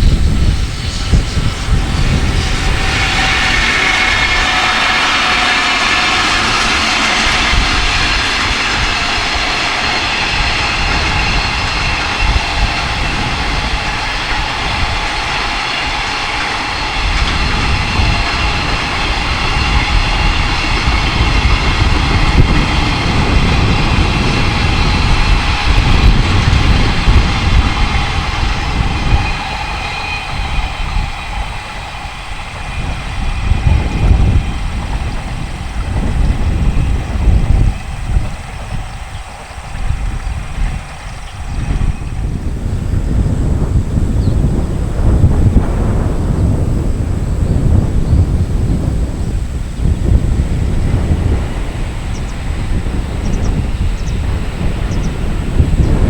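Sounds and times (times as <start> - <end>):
electric locomotive running with high whine: 0.0 - 56.0.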